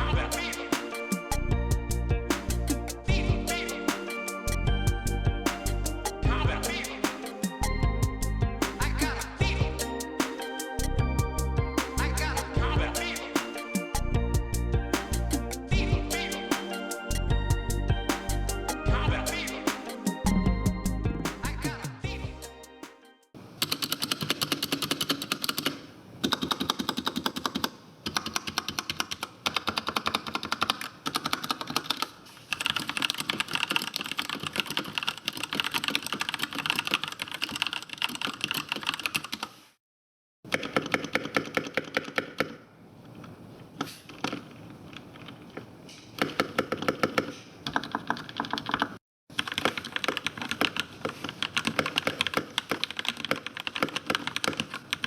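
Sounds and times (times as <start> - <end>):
fast mechanical keyboard typing: 23.6 - 39.5, 40.5 - 42.6, 46.2 - 55.0.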